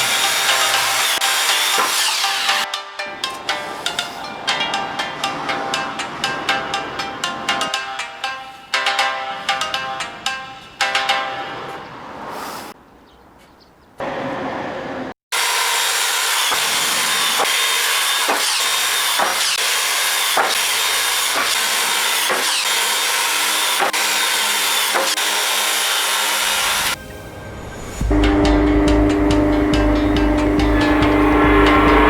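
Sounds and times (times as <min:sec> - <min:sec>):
power tool cutting wood: 0:00.0 - 0:02.6, 0:15.3 - 0:27.0.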